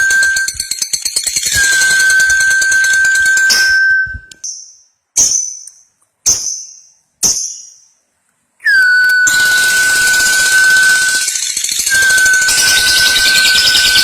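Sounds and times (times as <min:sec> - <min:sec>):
steady whistled tone: 0:00.0 - 0:05.6, 0:08.6 - 0:14.0
sharp high bird calls: 0:08.6 - 0:14.0.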